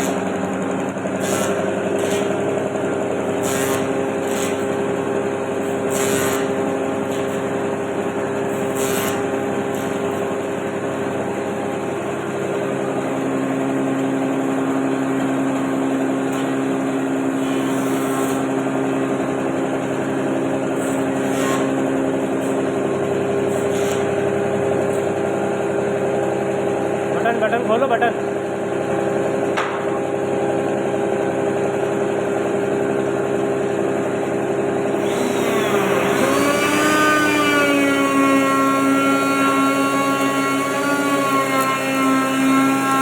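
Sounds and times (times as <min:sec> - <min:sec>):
power tool motor running: 0:00.0 - 0:19.4, 0:34.8 - 0:43.0.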